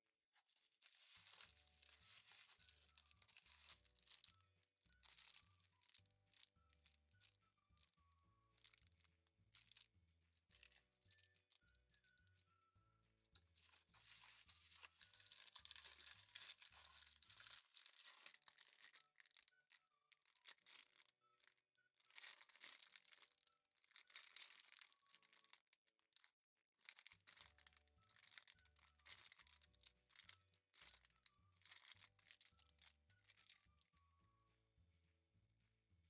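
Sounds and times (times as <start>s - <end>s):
soft background music: 0.4s - 36.0s
packaging crinkling and tearing: 0.5s - 8.0s, 13.6s - 21.2s, 22.1s - 26.2s, 26.8s - 33.7s.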